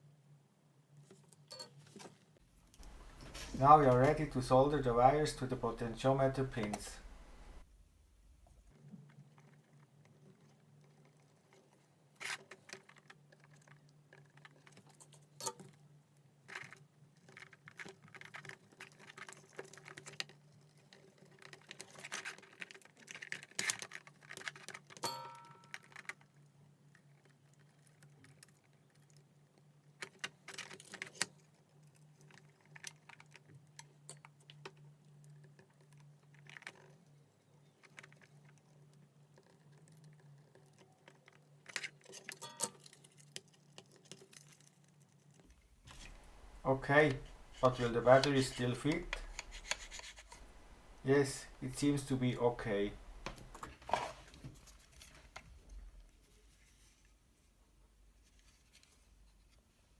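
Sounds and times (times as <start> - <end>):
faint low hum: 0.0 - 12.2, 31.4 - 59.9
tools and wires clicking: 1.1 - 2.1, 10.4 - 15.8, 16.5 - 26.4, 37.7 - 46.3.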